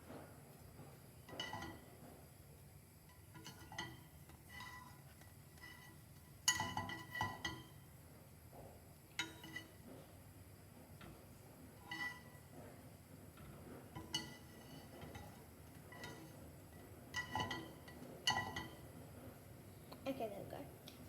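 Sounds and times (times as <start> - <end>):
dishes and utensils clinking: 1.3 - 2.0, 3.1 - 7.8, 9.1 - 9.9, 11.8 - 12.6, 13.4 - 19.0.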